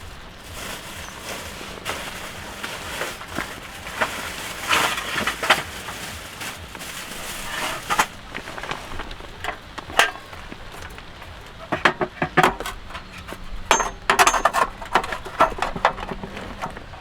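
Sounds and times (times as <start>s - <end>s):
rain hissing: 0.0s - 11.7s.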